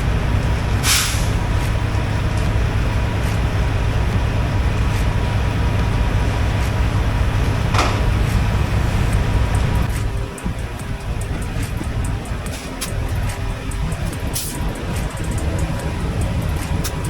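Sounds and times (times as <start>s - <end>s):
truck engine rumble: 0.0s - 17.0s
short hiss: 0.8s - 1.4s.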